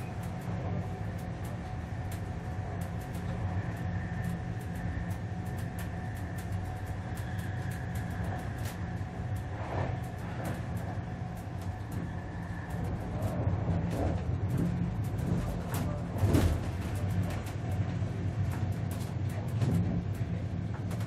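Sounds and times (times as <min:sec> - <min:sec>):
faint whine: 0:00.0 - 0:21.0
train cabin low rumble: 0:00.0 - 0:21.0
small rattles and clicks: 0:00.1 - 0:21.0.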